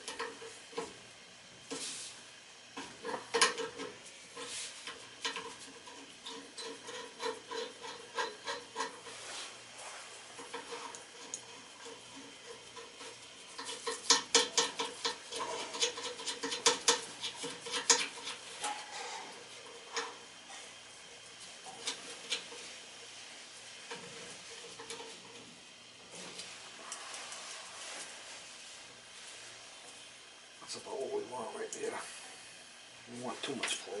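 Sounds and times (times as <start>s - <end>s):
hand tools clicking and scraping metal: 0.0s - 1.0s, 2.8s - 28.2s.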